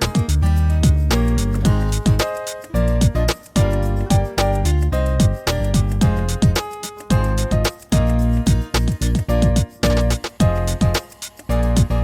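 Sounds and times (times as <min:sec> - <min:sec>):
deep drum hits: 0:00.2 - 0:02.3, 0:03.0 - 0:04.6, 0:05.2 - 0:11.0
pitched instrument notes: 0:01.1 - 0:11.6.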